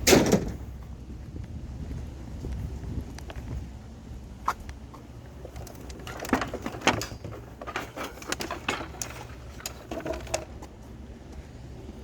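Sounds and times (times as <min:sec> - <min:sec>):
scrap metal clattering: 0:05.5 - 0:10.6.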